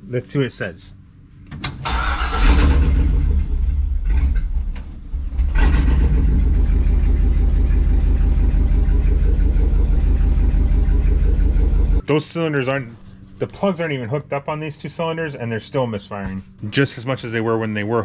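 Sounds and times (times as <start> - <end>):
car engine running rough: 2.2 - 12.0.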